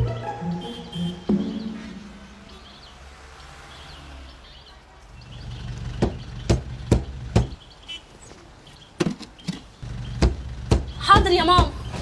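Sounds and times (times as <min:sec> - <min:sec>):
low vehicle rumble: 0:05.1 - 0:07.6, 0:09.7 - 0:12.0
heavy thumps: 0:06.0 - 0:07.6, 0:09.0 - 0:12.0.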